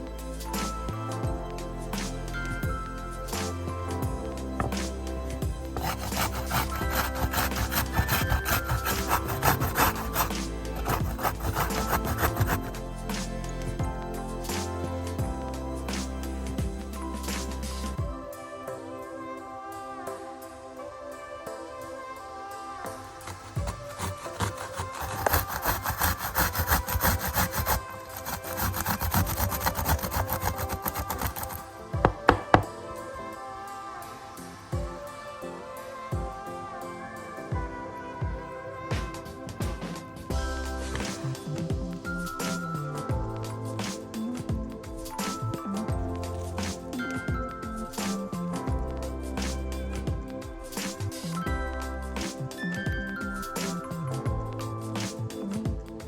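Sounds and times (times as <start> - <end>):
background music: 0.0 - 56.0
hand scraping food: 5.7 - 12.8, 23.2 - 32.6
sharp knocks: 32.0 - 32.7.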